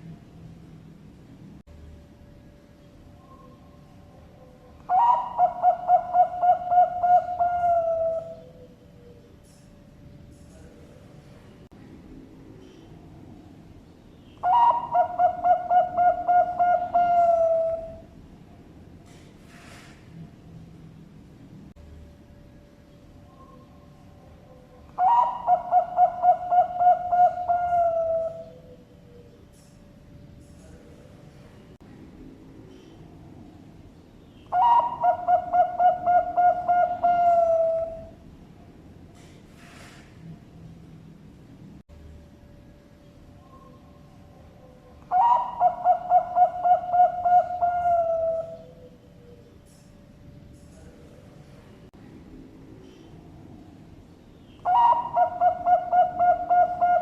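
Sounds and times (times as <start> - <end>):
dove cooing: 3.2 - 9.4, 14.4 - 18.2, 23.3 - 29.4, 34.5 - 38.2, 43.4 - 49.6, 54.6 - 57.0.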